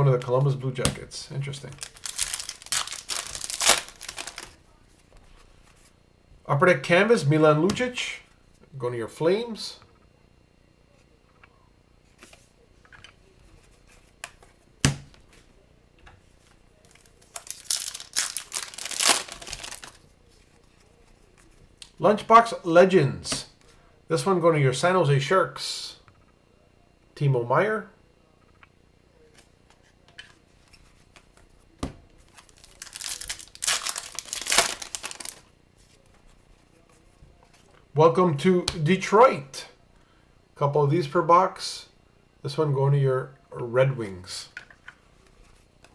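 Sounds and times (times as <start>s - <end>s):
foil pack crinkling and tearing: 1.6s - 4.6s, 16.9s - 20.0s, 32.3s - 35.5s
cards clicking: 16.9s - 20.0s, 32.4s - 35.4s.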